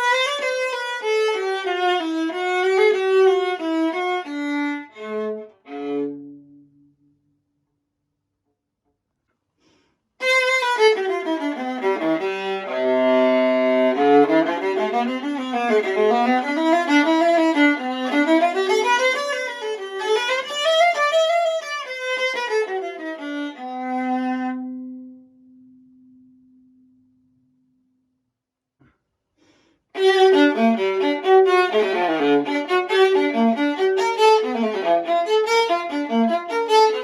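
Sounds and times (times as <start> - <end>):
solo viola bowed: 0.0 - 7.0, 10.2 - 26.9, 30.0 - 37.0.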